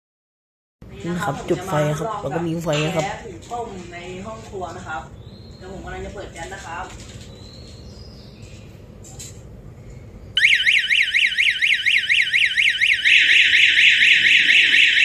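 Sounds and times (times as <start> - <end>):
electronic siren wailing: 10.4 - 15.0.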